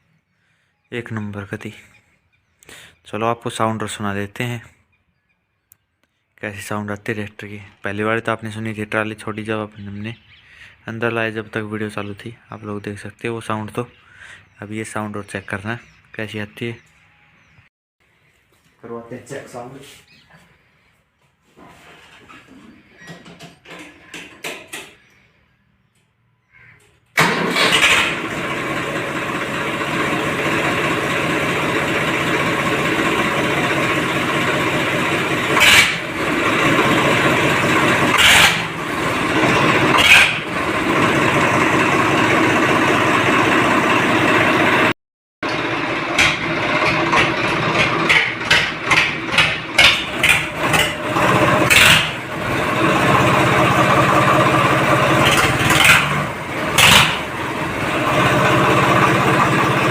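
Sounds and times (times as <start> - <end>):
tractor diesel engine idling and revving: 27.2 - 59.9.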